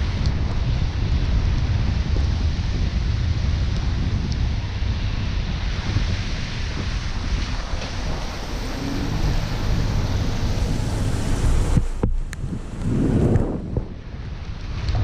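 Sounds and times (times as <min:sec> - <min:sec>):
car road noise rumble: 0:00.0 - 0:15.0
wind buffeting microphone: 0:00.0 - 0:15.0
wet tyres hissing: 0:05.6 - 0:13.8.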